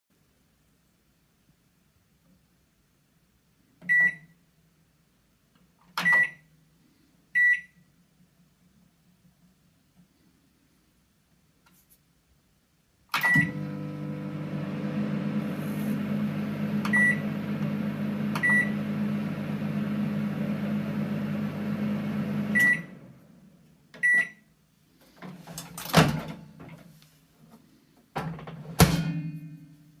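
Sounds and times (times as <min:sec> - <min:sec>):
microwave beeps: 0:03.9 - 0:04.3, 0:06.0 - 0:06.4, 0:13.2 - 0:23.0, 0:24.0 - 0:24.5
microwave oven humming: 0:13.2 - 0:23.4.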